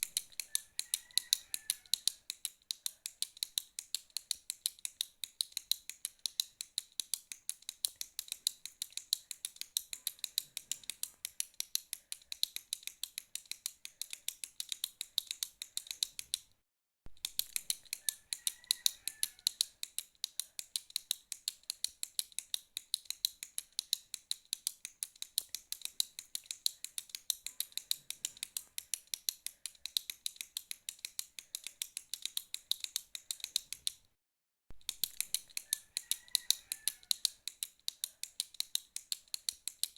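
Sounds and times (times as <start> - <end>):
ballpoint pen clicking: 0.0 - 16.6, 17.2 - 34.1, 34.8 - 39.9.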